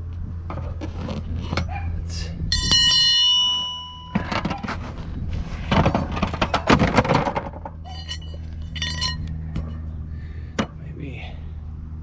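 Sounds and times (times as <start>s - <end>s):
ringing metal clinks: 2.5s - 4.6s, 7.9s - 9.3s
metal tools clattering: 2.6s - 4.8s, 5.8s - 9.3s.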